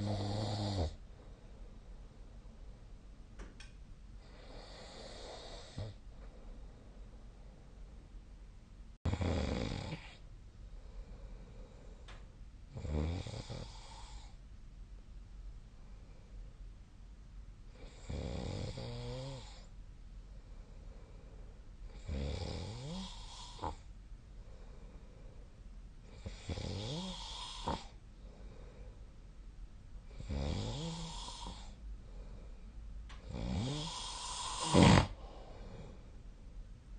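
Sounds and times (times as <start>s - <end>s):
person snoring: 0.0s - 1.0s, 4.2s - 6.0s, 9.1s - 10.2s, 12.7s - 14.4s, 17.7s - 19.7s, 21.9s - 23.9s, 26.1s - 28.0s, 30.1s - 31.8s, 33.3s - 36.0s
sharp snort: 33.4s - 35.3s.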